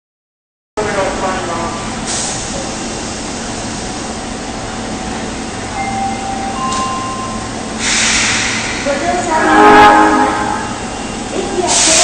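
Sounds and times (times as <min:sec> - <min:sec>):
subway train whooshing: 0:00.8 - 0:12.0
loud hiss: 0:07.8 - 0:09.2, 0:11.6 - 0:12.0.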